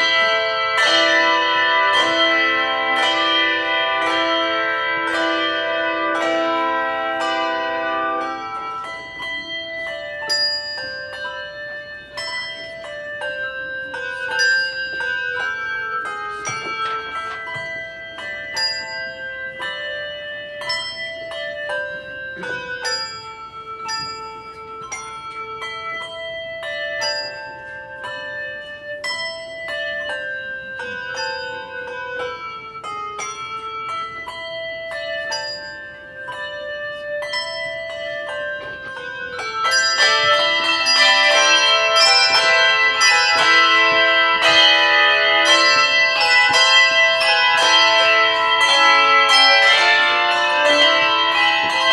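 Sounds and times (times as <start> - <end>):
handbell choir playing: 0.0 - 51.9.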